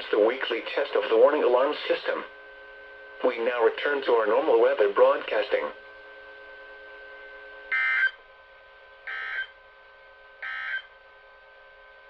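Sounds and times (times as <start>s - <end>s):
digital data tone bursts: 10.4s - 10.9s.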